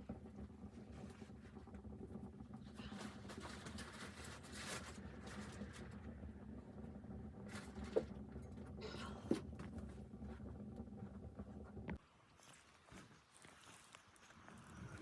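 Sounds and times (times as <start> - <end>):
rustling and handling noise: 2.8 - 6.0.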